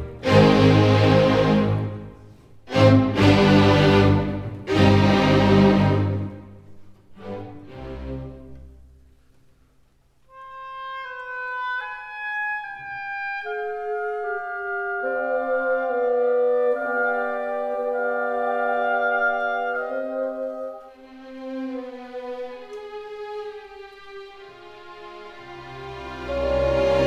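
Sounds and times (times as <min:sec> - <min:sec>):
loud full music passage: 0:00.0 - 0:08.7, 0:25.0 - 0:27.0.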